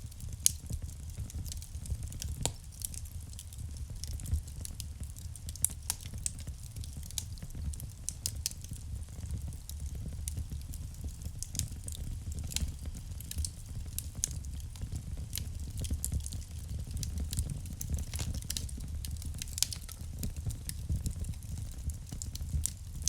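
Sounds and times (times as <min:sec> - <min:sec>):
fire crackling and popping: 0:00.0 - 0:23.0
low rumble of flames: 0:00.0 - 0:23.0.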